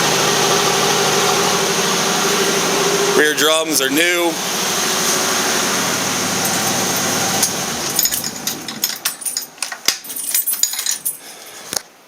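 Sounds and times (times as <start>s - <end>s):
engine running: 0.0s - 9.7s
sharp metallic clicks and clinks: 6.4s - 11.4s.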